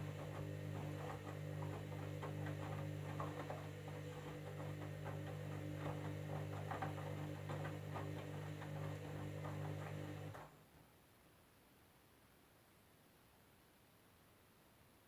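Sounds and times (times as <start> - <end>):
washing machine motor hum: 0.0 - 10.5.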